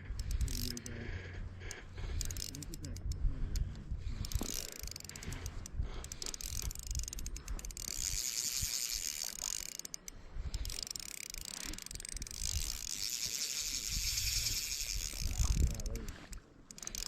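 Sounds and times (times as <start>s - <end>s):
fishing reel clicking and whirring: 0.0s - 17.0s.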